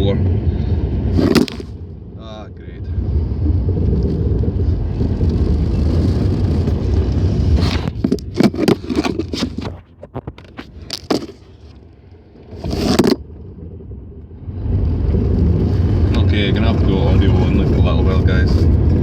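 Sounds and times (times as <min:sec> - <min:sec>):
car interior driving rumble: 0:00.0 - 0:19.0
loud scrape: 0:00.5 - 0:01.8, 0:03.9 - 0:11.8, 0:12.5 - 0:13.2
sharp scraping clatters: 0:01.1 - 0:01.8, 0:04.9 - 0:11.9, 0:12.5 - 0:13.3.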